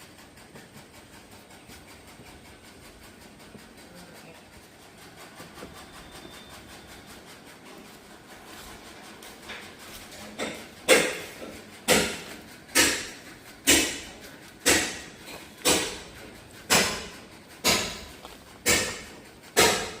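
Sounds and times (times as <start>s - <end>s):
sharp knocks: 10.4s - 20.0s.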